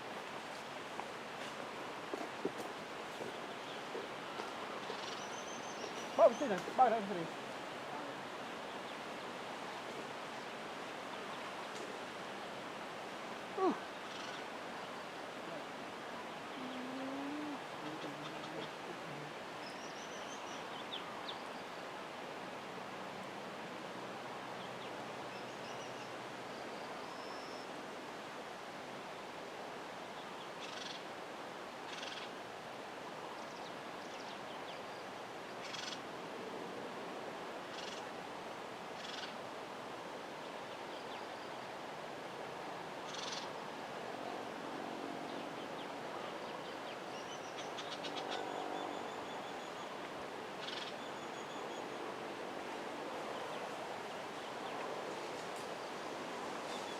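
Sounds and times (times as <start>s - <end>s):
low pulsing animal call: 13.6s - 14.3s, 16.5s - 18.8s.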